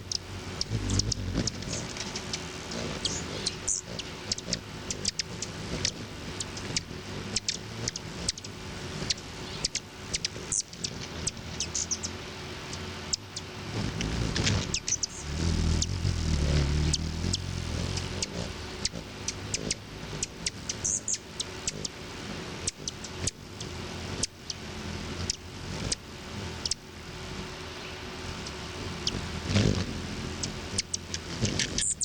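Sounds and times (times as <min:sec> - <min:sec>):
high chip calls: 0:00.0 - 0:22.0
hummingbird wing hum: 0:00.0 - 0:32.0.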